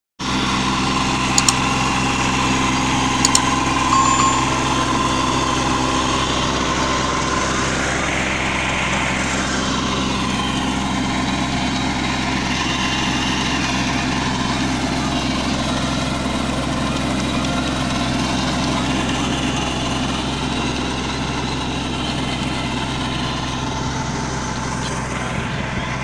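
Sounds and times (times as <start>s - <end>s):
tractor diesel engine running: 0.2s - 26.0s
quick double clicks: 1.4s - 1.6s.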